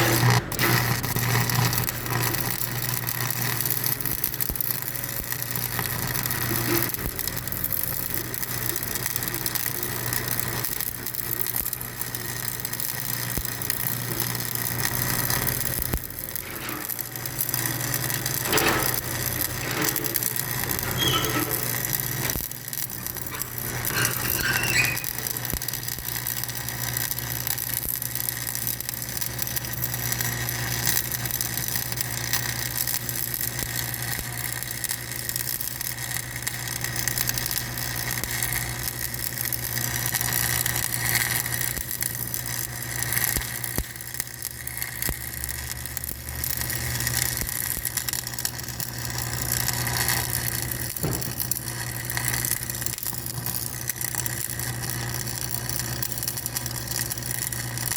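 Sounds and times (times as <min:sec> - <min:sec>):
rattles and clicks: 0:18.1 - 0:25.2
high-pitched squeals: 0:19.8 - 0:21.9, 0:23.3 - 0:25.2.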